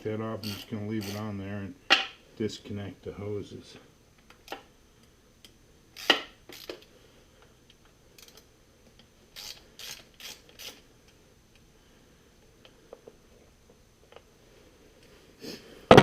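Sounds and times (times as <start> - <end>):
rasping ratchet strokes: 0.4 - 1.3, 6.0 - 6.8, 9.4 - 10.8.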